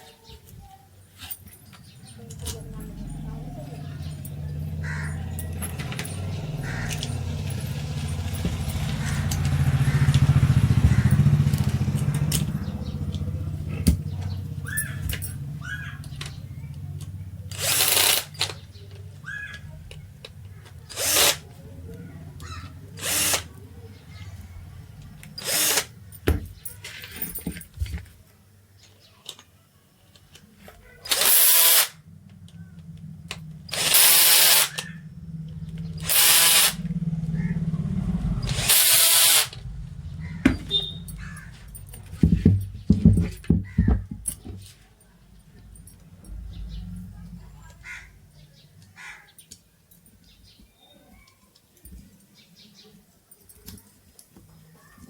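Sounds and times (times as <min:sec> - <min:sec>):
power tool running: 0:02.2 - 0:18.6, 0:20.2 - 0:26.3, 0:31.0 - 0:43.8.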